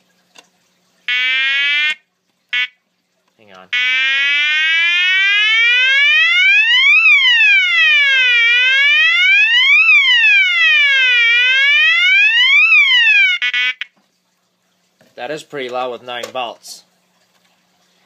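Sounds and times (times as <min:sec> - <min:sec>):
fire alarm siren wail: 0:01.1 - 0:02.0, 0:03.7 - 0:13.9.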